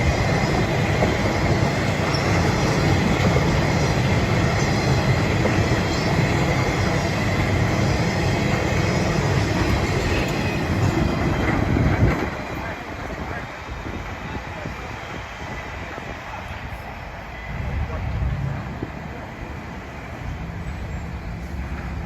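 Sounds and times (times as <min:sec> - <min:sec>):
high wheel squeal: 0:00.0 - 0:12.0
train rumbling past: 0:00.0 - 0:22.0.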